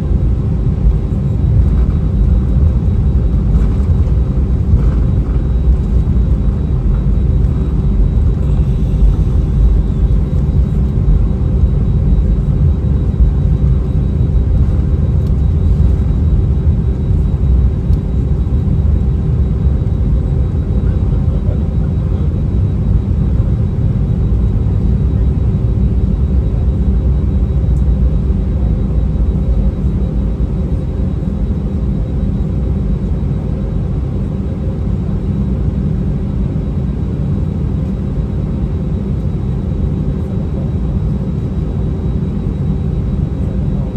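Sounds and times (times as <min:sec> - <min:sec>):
airplane cabin engine rumble: 0:00.0 - 0:43.9
faint constant hum: 0:00.0 - 0:43.9.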